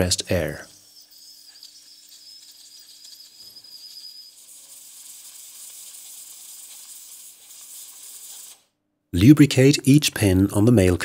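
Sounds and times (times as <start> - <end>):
hiss of spray and compressed air: 4.4 - 8.7.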